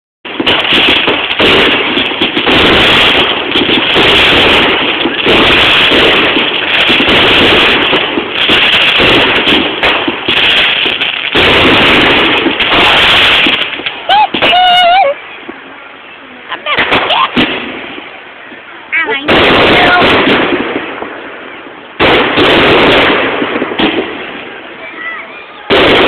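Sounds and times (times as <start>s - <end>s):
fireworks bangs and crackle: 0.2s - 26.0s.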